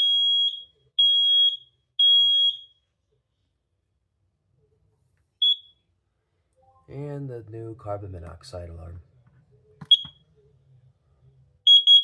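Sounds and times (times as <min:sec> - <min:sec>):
smoke alarm beeping: 0:00.0 - 0:02.8, 0:05.4 - 0:05.8, 0:09.8 - 0:10.2, 0:11.7 - 0:12.0.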